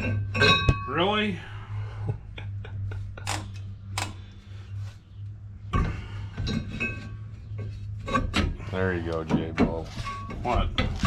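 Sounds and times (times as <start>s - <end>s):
steady low hum: 0.8s - 9.4s.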